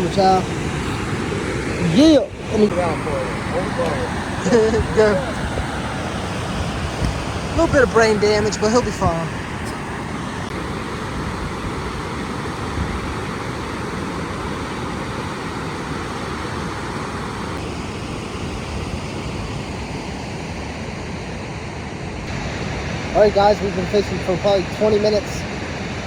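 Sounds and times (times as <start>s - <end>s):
water rushing through spillway: 0.0s - 17.8s
wind on microphone: 0.0s - 21.4s.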